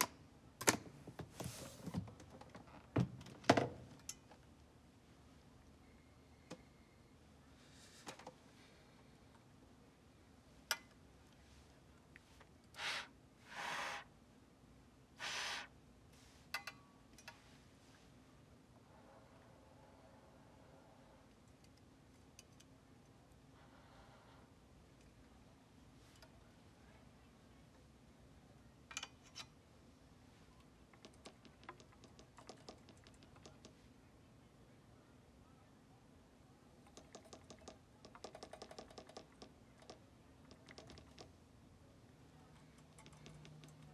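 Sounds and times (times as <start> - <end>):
rapid small clicks: 30.9 - 33.8, 36.9 - 41.4, 42.6 - 43.9.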